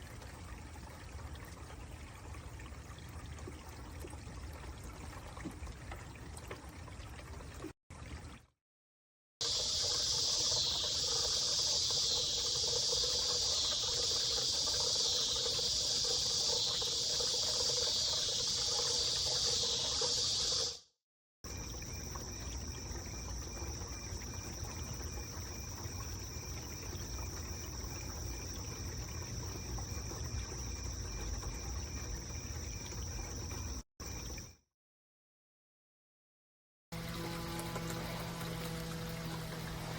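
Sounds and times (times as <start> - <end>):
water fountain trickling: 0.0 - 8.5, 9.4 - 20.8, 21.5 - 34.5, 37.0 - 39.9
insect chorus: 9.4 - 20.8, 21.5 - 34.6.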